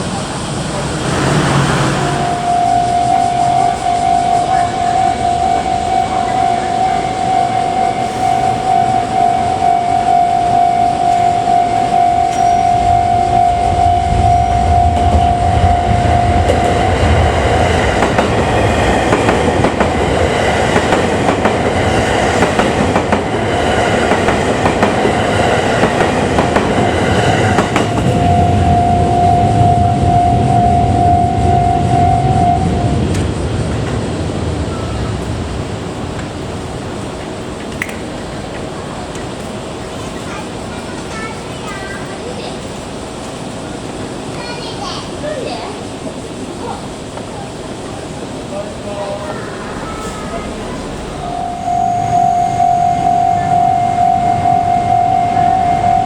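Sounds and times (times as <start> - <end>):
train rumble: 0.0 - 56.0
level-crossing alarm bell: 1.5 - 33.6, 49.6 - 56.0
train wheels clattering over rail joints: 15.9 - 28.2.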